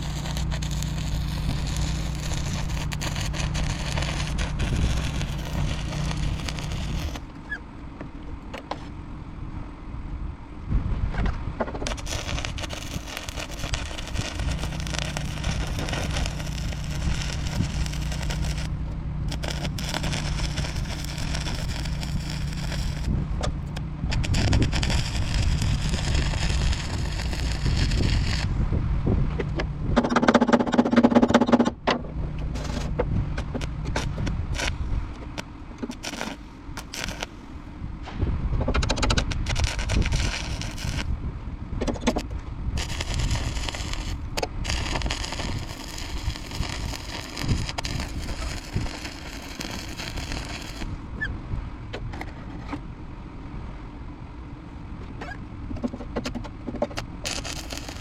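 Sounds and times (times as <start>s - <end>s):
welding arc crackling and hissing: 0.0s - 7.4s, 11.8s - 28.5s, 32.6s - 37.5s, 38.7s - 41.1s, 42.8s - 51.0s, 56.7s - 58.0s
humming tone: 0.0s - 7.6s, 11.8s - 28.8s.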